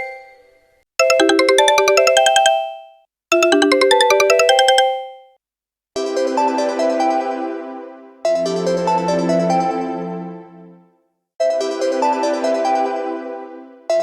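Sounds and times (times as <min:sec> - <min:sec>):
phone ringtone melody: 0:01.0 - 0:05.3.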